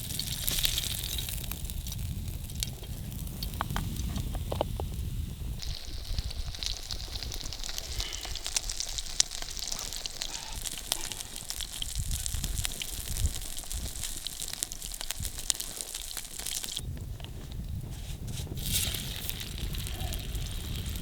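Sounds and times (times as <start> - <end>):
food sizzling in a pan: 0.0 - 16.8, 18.5 - 21.0.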